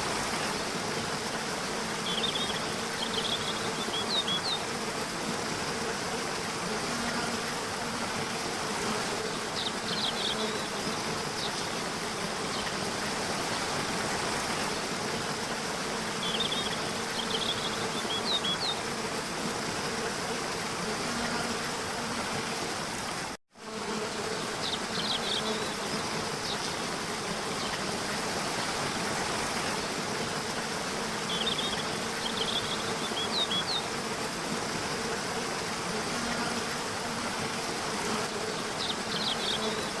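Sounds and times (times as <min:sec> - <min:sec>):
waterfall: 0:00.0 - 0:23.4, 0:24.2 - 0:40.0.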